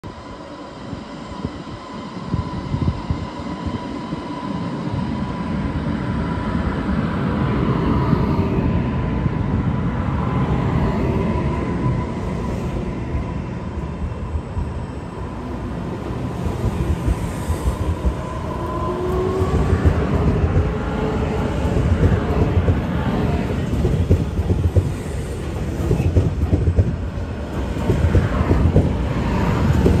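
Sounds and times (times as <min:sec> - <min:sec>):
wheels rumbling on rail: 0:06.4 - 0:30.0
train wheels knocking: 0:23.6 - 0:27.0, 0:27.7 - 0:29.0.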